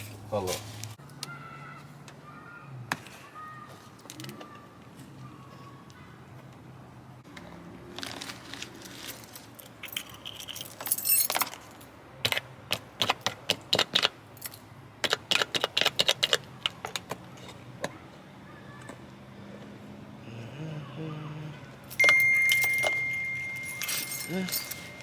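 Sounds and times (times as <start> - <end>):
small metal objects jingling: 9.0 - 11.8, 21.9 - 25.0.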